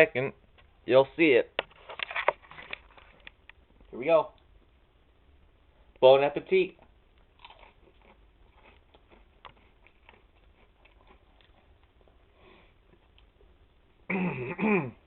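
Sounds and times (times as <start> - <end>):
chewing potato chip crunches: 7.2 - 12.1.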